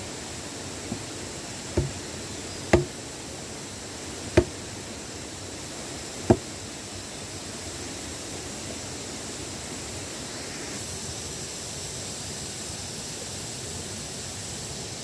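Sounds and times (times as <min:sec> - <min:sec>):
steady hiss: 0:00.0 - 0:15.0
tool chopping solid object: 0:00.9 - 0:01.1, 0:01.8 - 0:02.1, 0:02.7 - 0:03.0, 0:04.4 - 0:04.6, 0:06.3 - 0:06.5.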